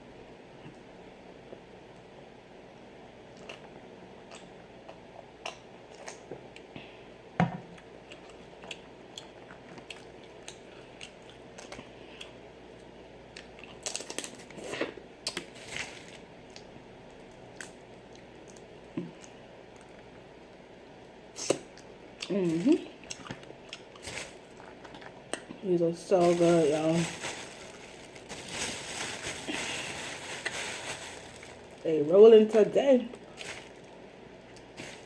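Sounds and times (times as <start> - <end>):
person chewing and lip smacking: 4.3 - 6.7, 8.0 - 12.4.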